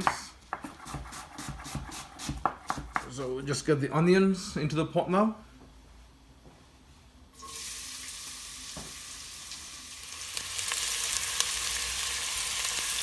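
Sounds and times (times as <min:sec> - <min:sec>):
onions sizzling in oil: 0:07.4 - 0:13.0.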